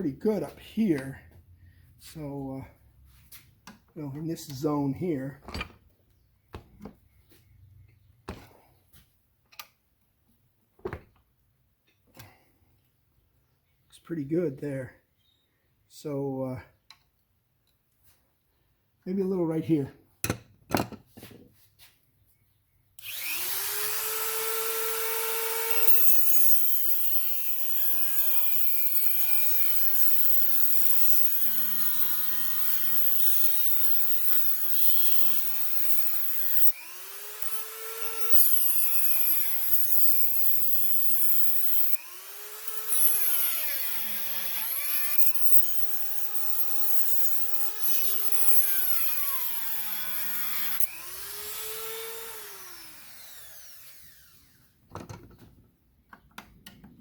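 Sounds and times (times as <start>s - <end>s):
grinder cutting steel: 23.0s - 54.7s.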